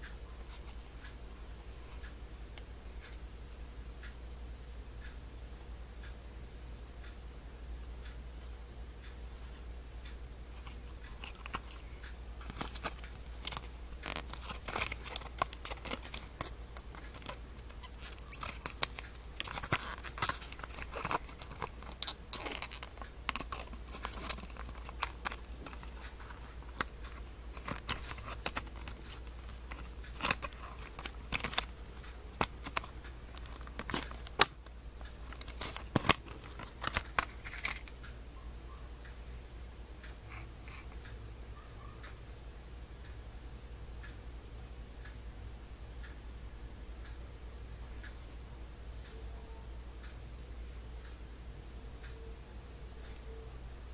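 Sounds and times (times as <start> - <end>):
packaging rustling and tearing: 12.5 - 34.5, 35.2 - 37.9.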